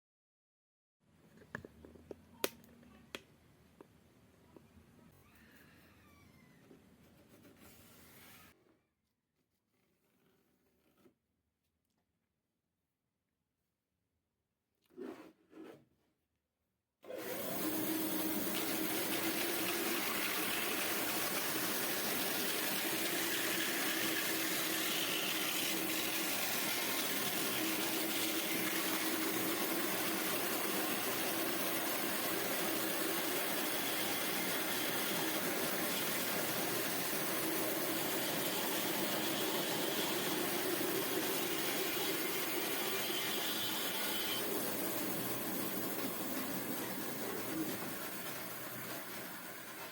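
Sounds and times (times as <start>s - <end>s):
band saw running: 17.2s - 47.1s.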